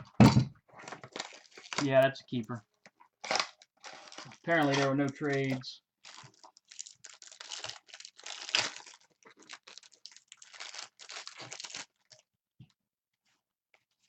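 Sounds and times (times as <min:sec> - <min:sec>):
wrapper tearing and crinkling: 0:00.8 - 0:02.0, 0:03.2 - 0:12.2.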